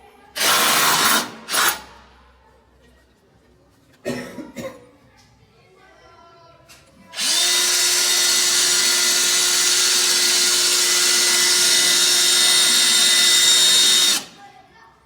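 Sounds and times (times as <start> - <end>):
electric drill boring into wall: 0.4 - 1.9, 7.2 - 14.4.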